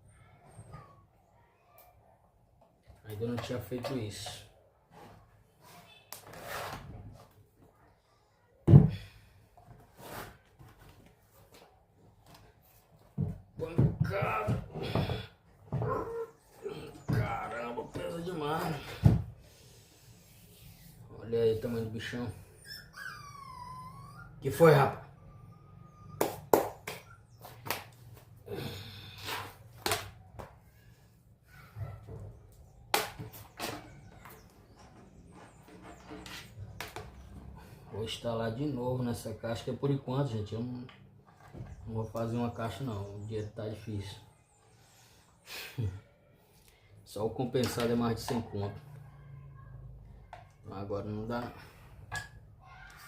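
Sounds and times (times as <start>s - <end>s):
scraping on wood: 5.0s - 7.3s, 33.0s - 37.9s.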